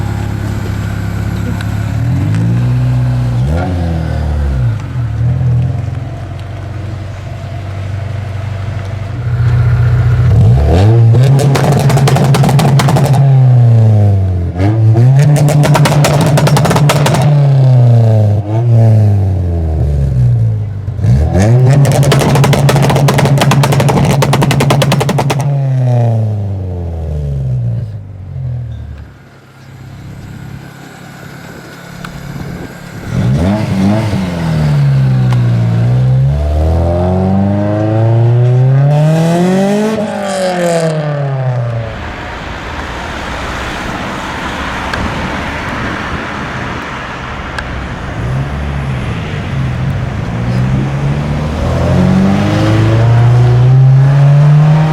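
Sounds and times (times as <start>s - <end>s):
car engine revving with crackle: 0.0s - 54.9s
rushing noise: 29.2s - 54.9s.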